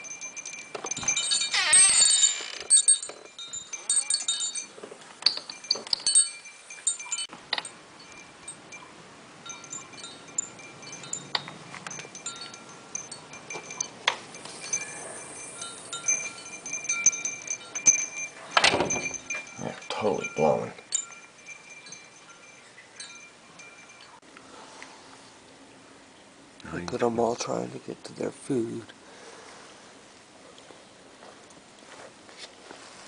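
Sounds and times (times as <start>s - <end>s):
wind chimes clinking: 0.0s - 24.3s.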